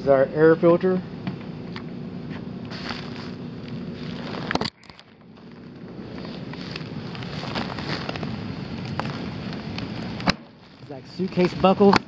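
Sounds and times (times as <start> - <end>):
hvac system humming: 0.0 - 12.0
small clicks and rustling: 2.7 - 12.0.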